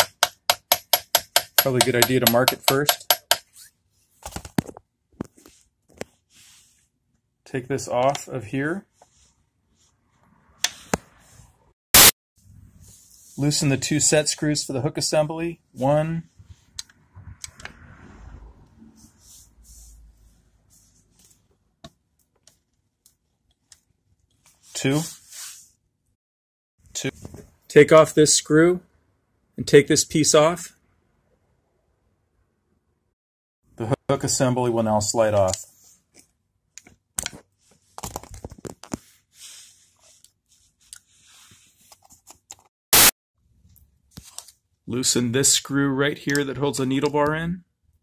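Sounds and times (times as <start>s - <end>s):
screwdriver scraping: 0.0s - 3.7s.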